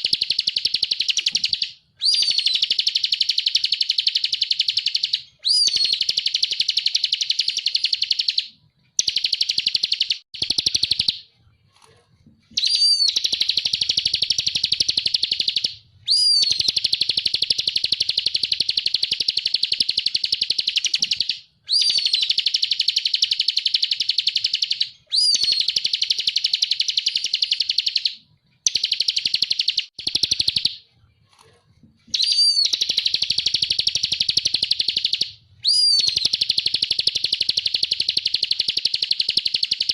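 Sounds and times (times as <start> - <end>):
bird chattering trill: 0.0 - 8.4, 32.1 - 39.9.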